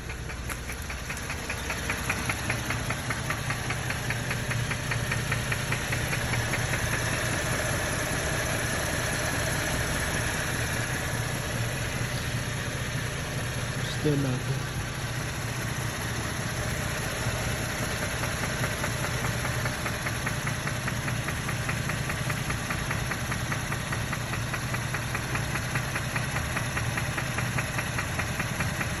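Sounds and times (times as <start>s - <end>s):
car engine running: 0.0s - 29.0s
rapid engine knock: 0.0s - 29.0s.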